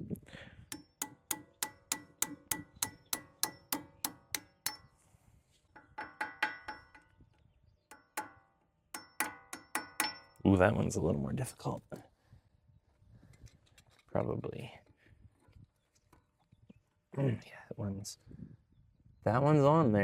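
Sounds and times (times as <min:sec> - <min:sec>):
hammer tapping steel pin: 0:00.7 - 0:04.9, 0:05.8 - 0:07.1, 0:09.0 - 0:10.4.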